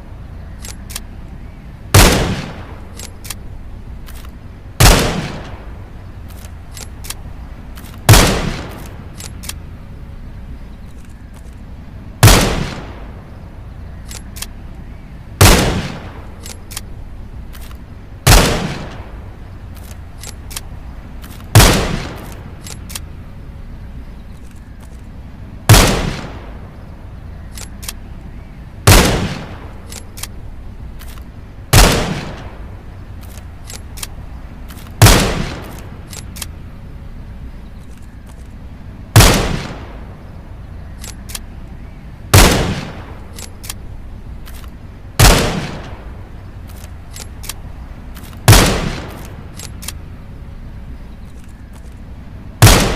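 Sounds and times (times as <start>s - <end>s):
faint clicks: 0.5s - 1.4s, 6.2s - 9.7s, 10.6s - 11.8s, 13.9s - 15.0s, 16.3s - 17.9s, 18.8s - 23.2s, 24.1s - 25.2s, 27.2s - 28.3s, 29.5s - 31.5s, 32.3s - 36.8s, 37.6s - 38.8s, 40.8s - 41.8s, 42.8s - 45.0s, 45.7s - 50.1s, 50.9s - 52.2s
rifle shots: 1.9s - 4.2s, 4.8s - 9.7s, 12.2s - 13.3s, 15.4s - 17.0s, 17.6s - 23.2s, 25.7s - 26.8s, 28.8s - 30.4s, 31.0s - 36.7s, 39.1s - 40.2s, 42.3s - 44.6s, 45.2s - 50.1s, 52.6s - 52.9s.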